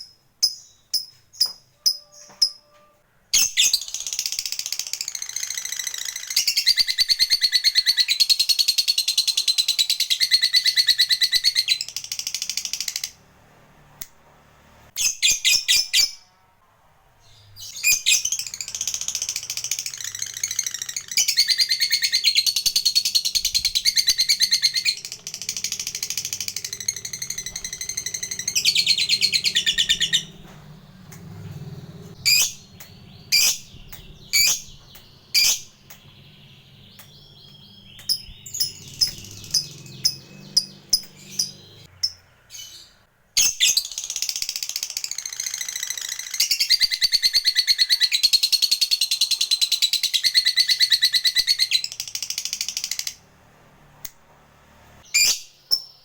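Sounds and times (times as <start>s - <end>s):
lovebird chattering trills: 17.8s - 30.5s, 32.1s - 42.8s.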